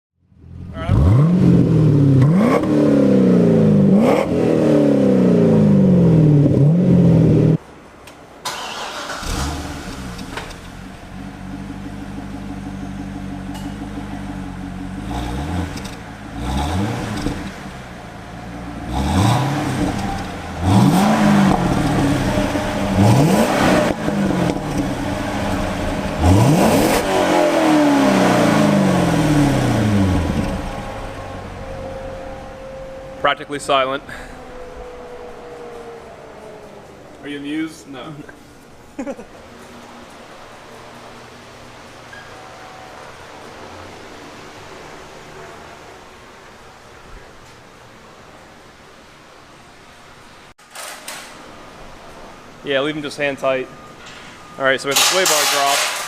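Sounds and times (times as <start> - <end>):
car engine revving: 0.4 - 7.6, 8.5 - 46.8
engine idling with throttle blips: 10.3 - 19.0, 19.6 - 39.0.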